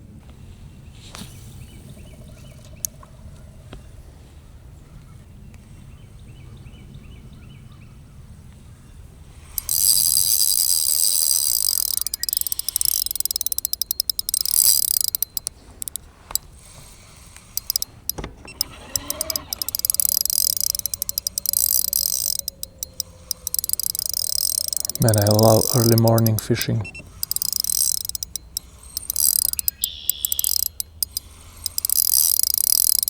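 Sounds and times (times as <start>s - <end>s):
fishing reel whirring and ticking: 9.5s - 33.0s.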